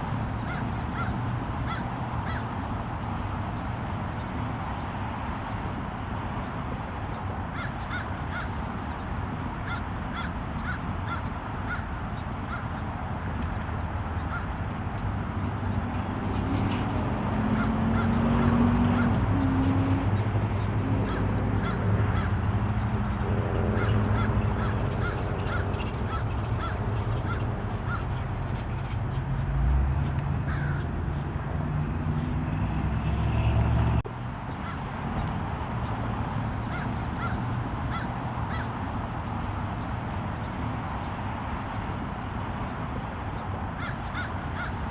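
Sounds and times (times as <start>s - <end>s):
crows cawing: 0.4s - 2.5s, 7.6s - 8.6s, 9.6s - 11.9s, 12.5s - 12.7s, 14.3s - 14.6s, 17.5s - 19.2s, 21.0s - 22.4s, 23.8s - 28.2s, 30.4s - 30.9s, 34.6s - 34.8s, 36.6s - 38.8s, 43.8s - 44.9s.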